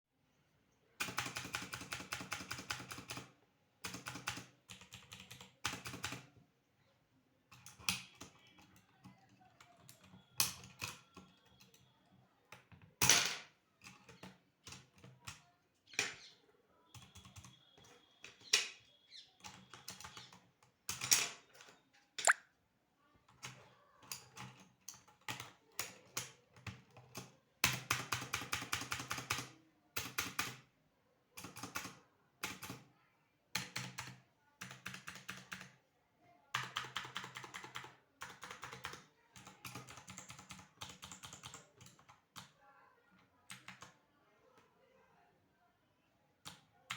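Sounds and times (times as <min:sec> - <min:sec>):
mechanical keyboard typing: 0:01.0 - 0:06.3, 0:24.2 - 0:30.6, 0:33.6 - 0:35.8, 0:36.5 - 0:42.5, 0:43.5 - 0:43.9.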